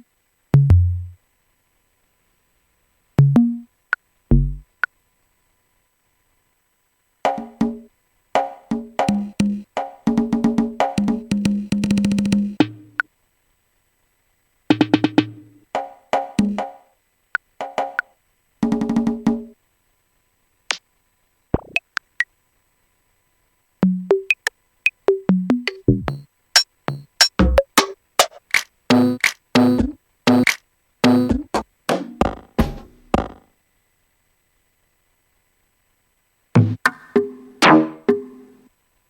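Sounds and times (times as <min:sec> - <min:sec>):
pitched percussion and synth hits: 0:25.6 - 0:31.6, 0:32.2 - 0:33.4.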